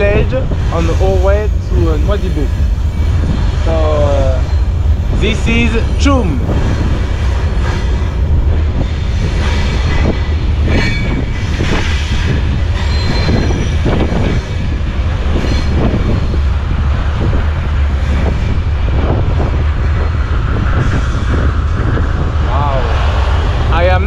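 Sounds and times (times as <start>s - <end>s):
freight train rumble: 0.0s - 24.0s
train wheel squeals: 0.6s - 16.7s.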